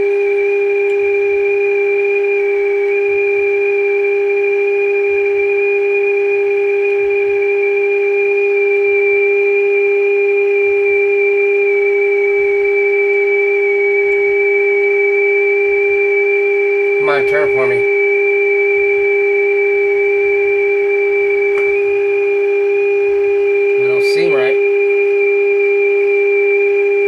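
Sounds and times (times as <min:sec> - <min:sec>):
radio test tone: 0:16.8 - 0:18.1, 0:21.2 - 0:22.4, 0:23.4 - 0:25.0.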